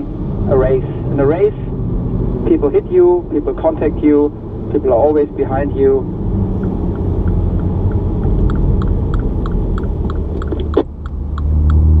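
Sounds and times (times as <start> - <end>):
engine and road rumble: 0.0 - 12.0
light ticking: 6.5 - 11.8.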